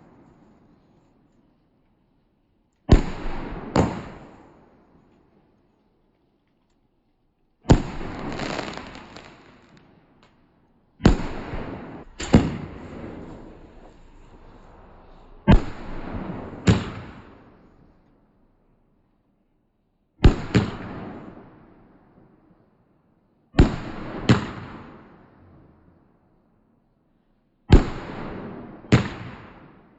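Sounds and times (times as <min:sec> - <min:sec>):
fireworks bangs: 0:02.9 - 0:04.9, 0:07.7 - 0:18.4.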